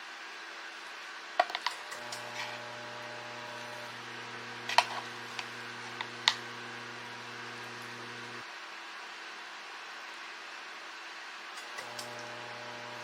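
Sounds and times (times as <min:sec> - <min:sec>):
kitchen appliance humming: 0:01.4 - 0:08.5, 0:11.6 - 0:13.0.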